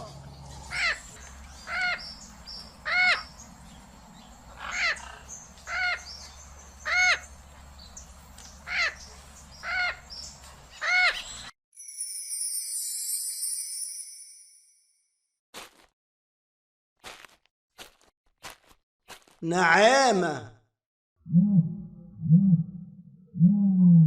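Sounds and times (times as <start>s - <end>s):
parrot squawking: 4.6s - 6.1s
high shimmering chime: 11.8s - 15.1s.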